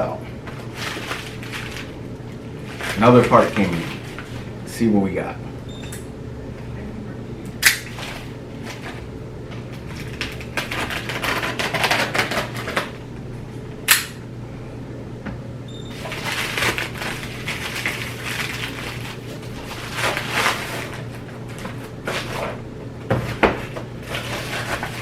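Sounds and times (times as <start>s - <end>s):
packaging rustling and tearing: 0.5s - 4.5s, 7.9s - 9.1s, 9.7s - 13.0s, 15.9s - 22.6s, 23.2s - 25.0s.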